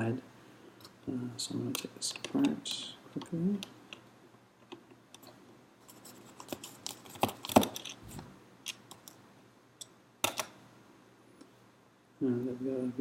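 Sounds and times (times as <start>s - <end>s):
plastic parts clicking and scraping: 4.7s - 9.2s.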